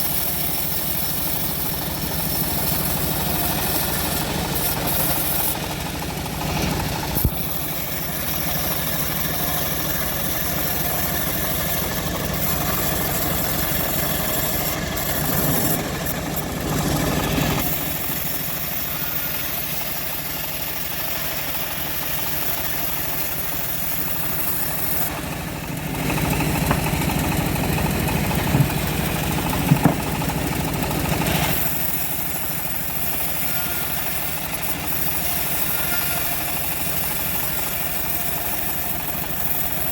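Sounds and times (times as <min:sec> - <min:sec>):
engine droning: 0:00.0 - 0:39.9
saw blade cutting log: 0:00.0 - 0:39.9
sharp knocks: 0:26.5 - 0:27.2, 0:28.3 - 0:30.4.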